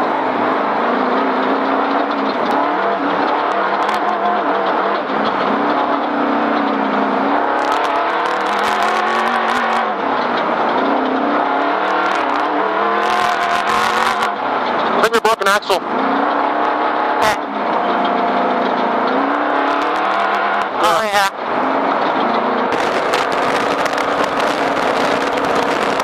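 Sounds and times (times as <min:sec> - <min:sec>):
vehicle engine revving: 0:00.0 - 0:26.0
sharp knocks and rattles: 0:01.1 - 0:12.5.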